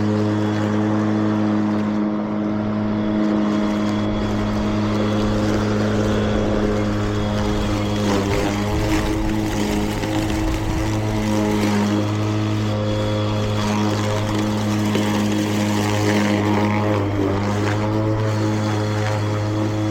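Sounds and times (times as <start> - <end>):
electric mower humming: 0.0 - 19.9.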